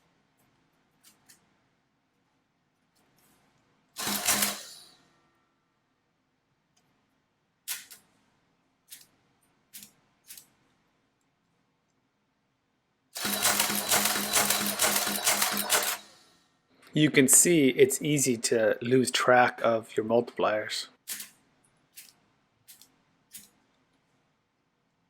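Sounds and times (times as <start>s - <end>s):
adding machine clattering: 13.2s - 16.1s.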